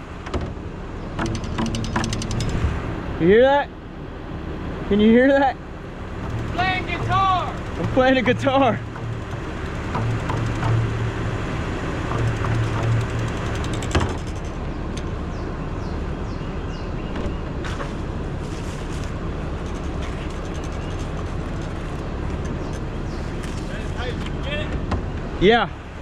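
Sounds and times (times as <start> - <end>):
sharp knock: 1.2 - 2.8, 6.2 - 14.6
engine running: 1.2 - 4.4, 5.6 - 15.4.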